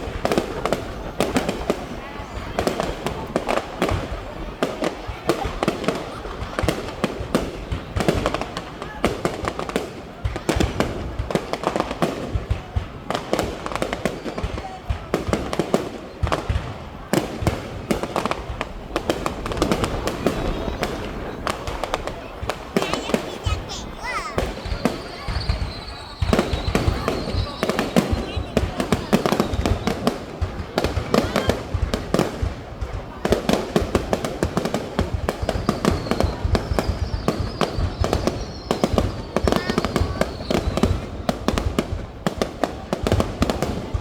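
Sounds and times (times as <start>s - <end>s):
fireworks bangs and pops: 0.0s - 44.0s
faint high whistle: 24.0s - 30.1s, 35.5s - 41.1s.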